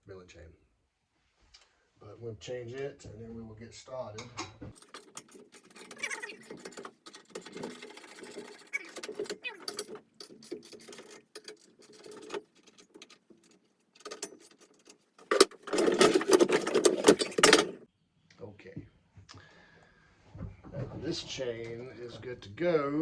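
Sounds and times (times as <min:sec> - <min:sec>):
metal saw chain rattling: 0:04.8 - 0:17.8.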